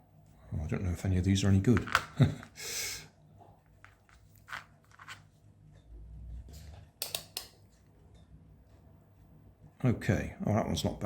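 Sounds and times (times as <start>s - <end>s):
light rustling of handled objects: 3.4s - 7.0s.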